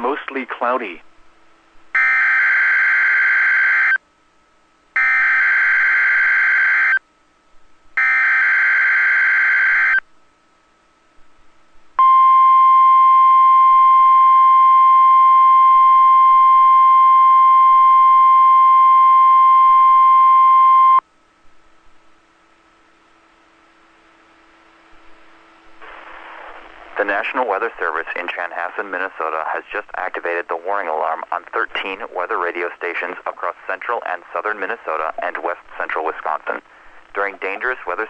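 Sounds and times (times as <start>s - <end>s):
loud steady alarm beep: 2.0s - 4.0s, 5.0s - 7.0s, 8.0s - 10.0s.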